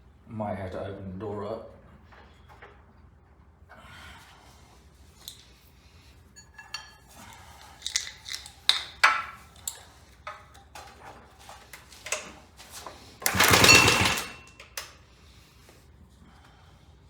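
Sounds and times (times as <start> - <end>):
clicks and knocks of handling: 6.6 - 15.0
small engine pull-started: 11.7 - 15.0.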